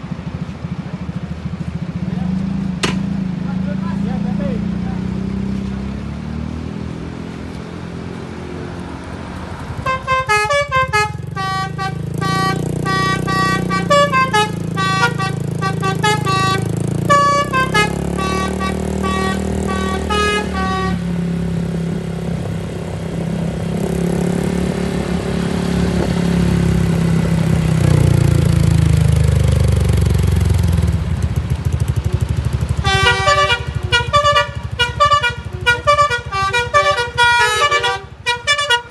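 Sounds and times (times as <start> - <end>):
bus engine running: 0.0 - 38.9
bus horn playing a fast tune: 9.8 - 21.1, 32.8 - 38.9.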